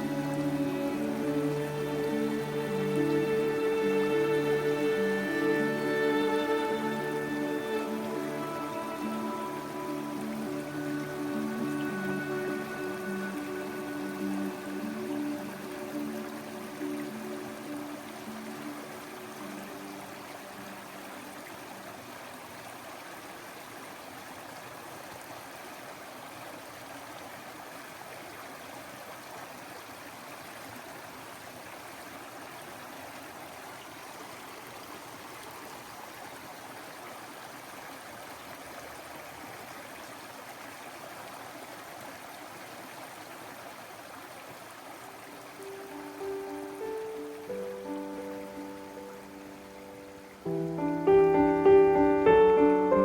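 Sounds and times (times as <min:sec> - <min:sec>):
faint music: 0:00.0 - 0:22.8, 0:45.2 - 0:53.0
running water flowing: 0:00.0 - 0:53.0.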